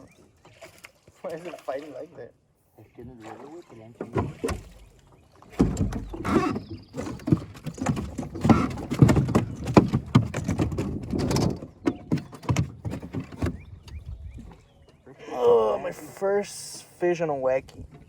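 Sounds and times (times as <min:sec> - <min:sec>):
knocks and thuds of fish handling: 0:04.0 - 0:04.9, 0:05.5 - 0:14.6.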